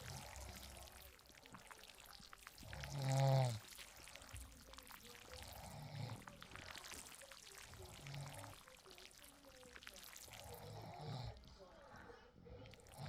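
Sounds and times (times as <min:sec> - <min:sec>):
person snoring softly: 0:00.0 - 0:01.5, 0:02.4 - 0:06.9, 0:07.7 - 0:08.6, 0:10.2 - 0:11.4, 0:12.0 - 0:13.0
rain pattering: 0:00.0 - 0:10.8.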